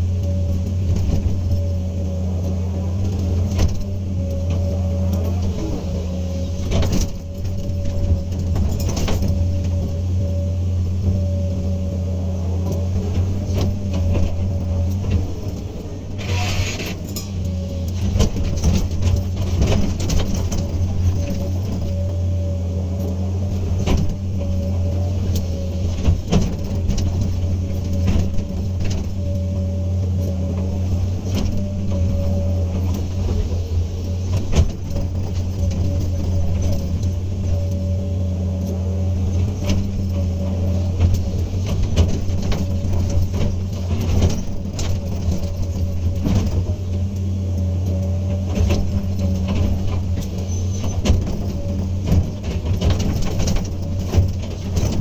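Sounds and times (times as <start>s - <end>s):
diesel engine running: 0.0s - 55.0s
machine clanks and knocks: 48.4s - 55.0s.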